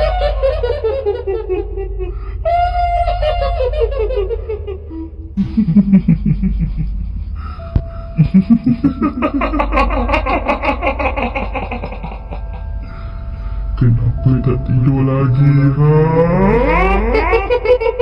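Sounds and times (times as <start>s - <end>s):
shrill pulsed cackle: 0.0s - 13.8s, 14.4s - 18.0s
deep pulsed laughs: 0.0s - 18.0s
steady low hum: 0.0s - 18.0s.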